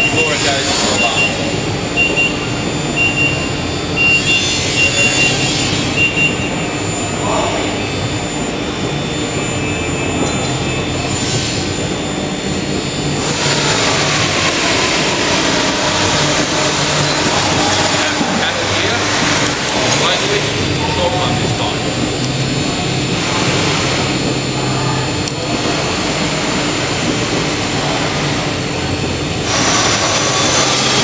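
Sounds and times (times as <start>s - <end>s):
broken high beeping tone: 0.0s - 23.0s
loud mechanical drone: 0.0s - 31.0s.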